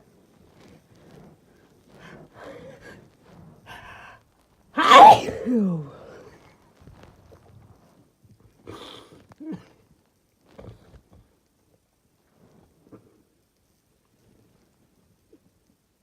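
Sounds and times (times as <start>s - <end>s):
person sneezing: 4.8s - 6.3s.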